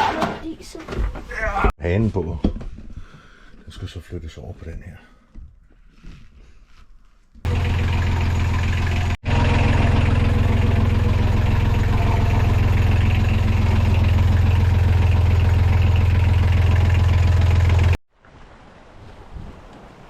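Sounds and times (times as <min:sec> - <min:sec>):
diesel engine idling: 0:07.5 - 0:18.0.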